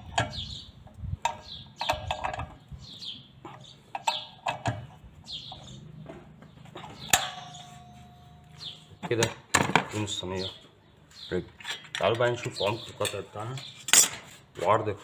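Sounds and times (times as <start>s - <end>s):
small birds chirping: 0.0s - 9.4s, 10.0s - 13.9s
ringing metal knock: 7.0s - 9.4s.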